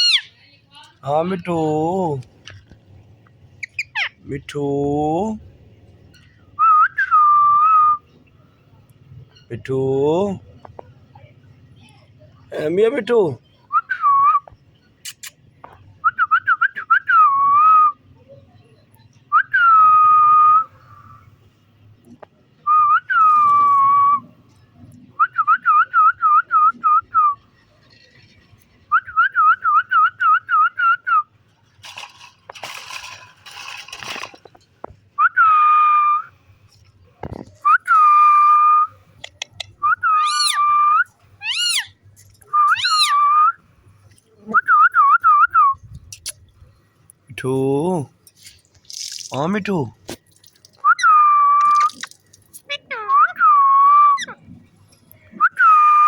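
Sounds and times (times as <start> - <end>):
parrot whistling and trilling: 0.0 - 0.3, 3.6 - 4.2, 39.8 - 43.6, 50.8 - 52.1, 52.7 - 54.4
parrot screechy calls: 0.0 - 0.4, 3.6 - 4.2, 40.1 - 40.8, 41.4 - 42.0, 42.6 - 43.4.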